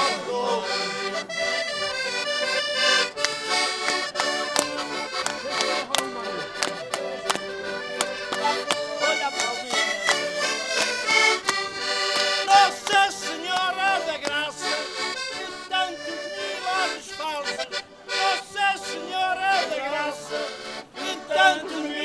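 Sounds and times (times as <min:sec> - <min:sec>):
person singing verses: 0:00.0 - 0:01.6, 0:03.8 - 0:22.0
concertinas playing folk tune: 0:00.0 - 0:22.0
sharp clicks: 0:02.9 - 0:08.8, 0:10.8 - 0:14.4.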